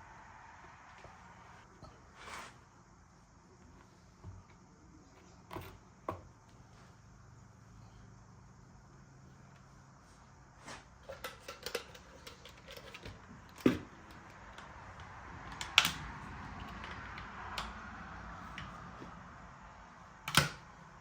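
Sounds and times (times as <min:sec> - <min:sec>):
hand tools clicking and clanking: 0:10.9 - 0:17.8.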